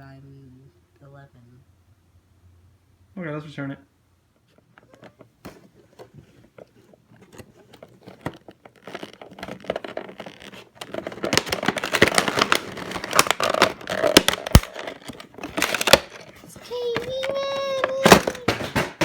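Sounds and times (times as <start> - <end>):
packaging clicks and scrapes: 4.6 - 19.0
packaging crinkling and tearing: 4.8 - 19.0.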